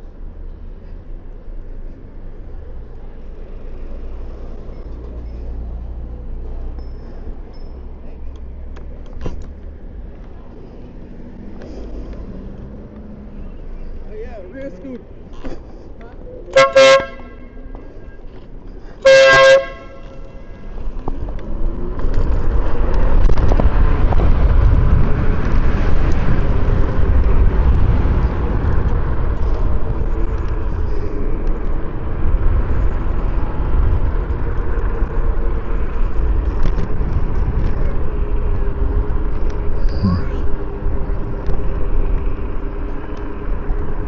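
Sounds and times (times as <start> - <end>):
wind and riding rumble: 0.0 - 44.0
electric air horn blast: 16.6 - 17.6, 19.0 - 20.3.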